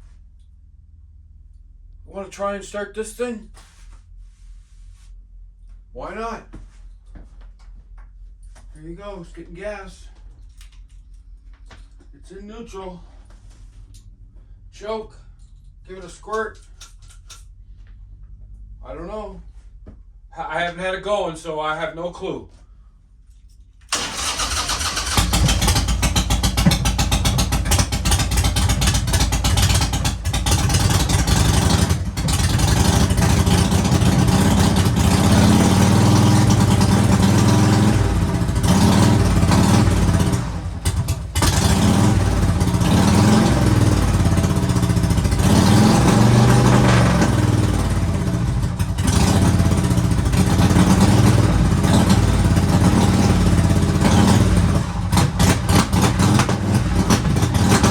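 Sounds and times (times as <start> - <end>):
motorcycle engine revving: 23.9 - 57.9.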